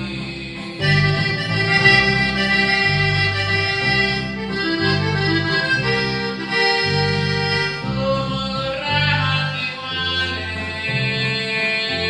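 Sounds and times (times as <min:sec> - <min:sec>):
electric bass low notes: 0:00.0 - 0:12.0
reedy lead instrument melody: 0:00.8 - 0:08.5.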